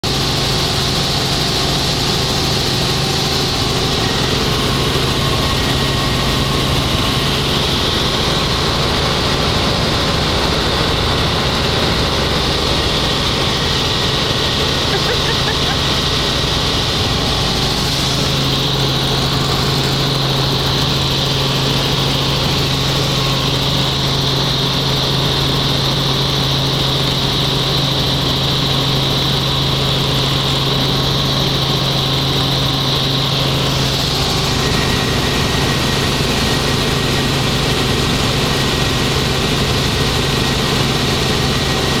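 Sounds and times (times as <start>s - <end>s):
helicopter engine and rotor drone: 0.0s - 42.0s
high whine: 1.3s - 23.7s.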